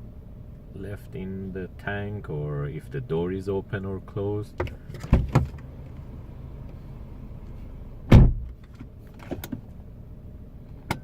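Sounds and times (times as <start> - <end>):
steady low hum: 0.0 - 11.0
car door shutting thump: 4.6 - 5.6, 8.1 - 8.6
car door latch clicks: 4.6 - 5.7, 8.1 - 9.6, 10.8 - 11.0.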